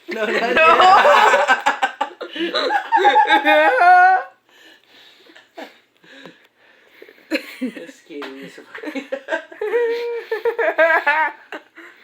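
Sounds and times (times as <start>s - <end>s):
person laughing: 0.1s - 4.3s.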